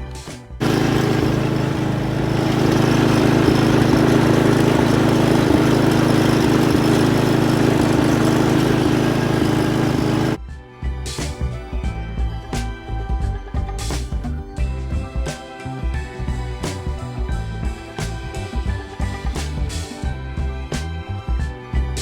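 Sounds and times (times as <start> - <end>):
riding mower engine running: 0.6 - 10.4.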